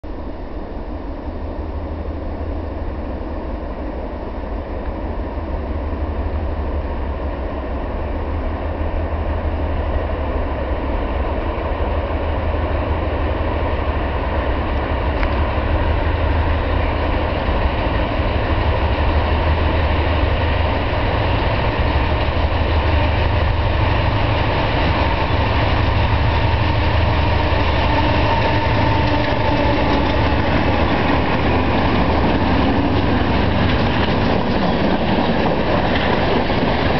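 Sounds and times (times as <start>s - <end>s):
locomotive engine rumble: 11.9s - 36.9s.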